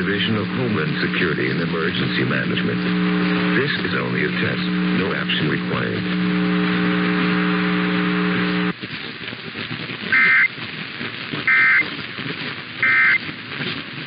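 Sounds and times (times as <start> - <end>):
low buzzing hum: 0.0 - 8.8, 10.0 - 14.0
two-tone data warble bursts: 10.2 - 10.5, 11.5 - 11.8, 12.8 - 13.2.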